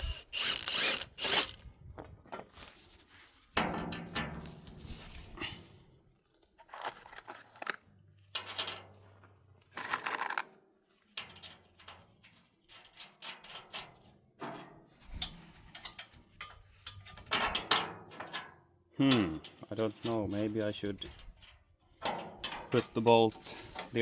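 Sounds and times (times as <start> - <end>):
long scraping or tearing: 0.0 - 1.6
handling knocks rustles and scrapes: 0.0 - 18.3, 19.4 - 24.0.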